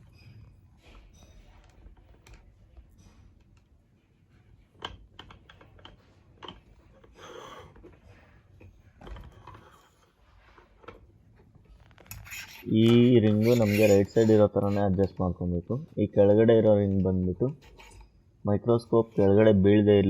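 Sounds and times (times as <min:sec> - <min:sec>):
metal scrape: 0:12.0 - 0:14.9, 0:17.6 - 0:18.2.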